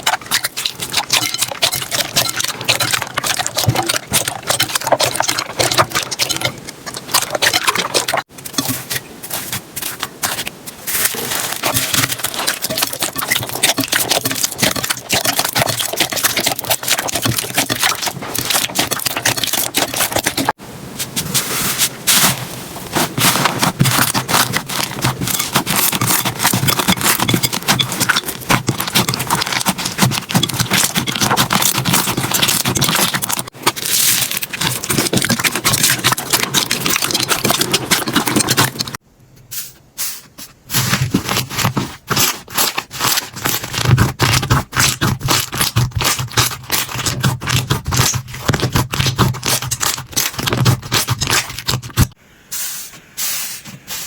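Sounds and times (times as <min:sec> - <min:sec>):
slime squishing and popping: 0:09.9 - 0:20.5, 0:23.2 - 0:39.0.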